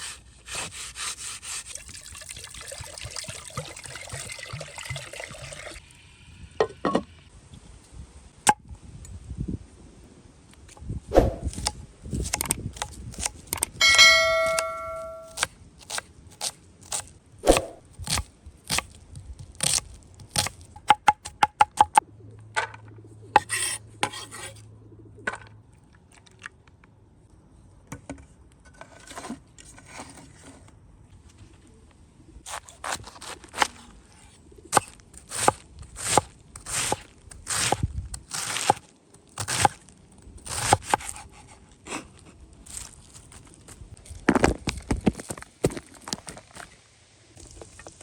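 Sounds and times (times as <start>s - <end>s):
knife cutting crisp food: 0.0s - 1.8s, 11.2s - 21.9s, 32.5s - 33.9s, 34.7s - 44.2s.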